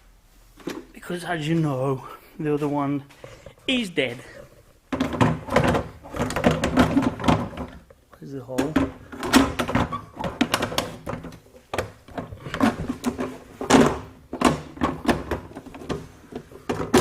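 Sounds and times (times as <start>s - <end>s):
hard parts knocking and rattling: 4.4s - 17.0s.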